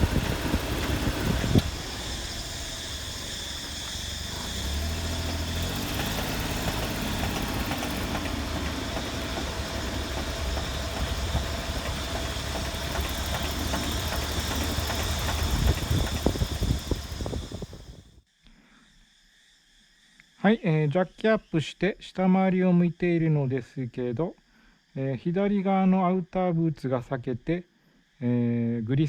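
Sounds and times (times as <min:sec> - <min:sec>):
drive shaft clicking: 0:00.0 - 0:18.0
car engine and road noise: 0:00.0 - 0:18.1.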